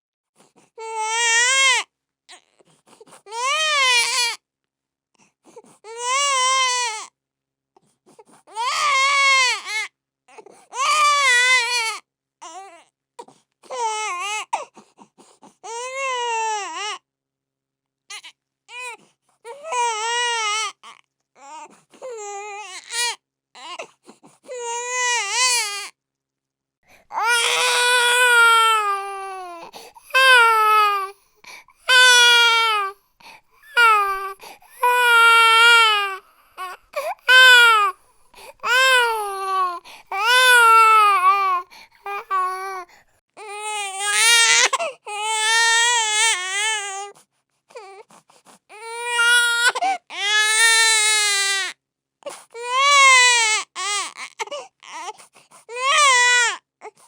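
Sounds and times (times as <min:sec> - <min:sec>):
infant crying: 0:00.8 - 0:01.8, 0:03.3 - 0:04.4, 0:05.8 - 0:07.1, 0:08.5 - 0:12.8, 0:15.6 - 0:17.0, 0:18.1 - 0:23.9, 0:24.5 - 0:25.9, 0:26.9 - 0:47.2, 0:48.7 - 0:51.7, 0:52.5 - 0:57.0.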